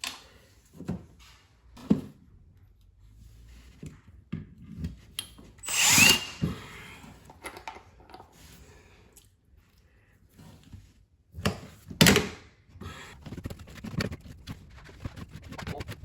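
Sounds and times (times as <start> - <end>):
power drill whine: 5.6 - 6.6.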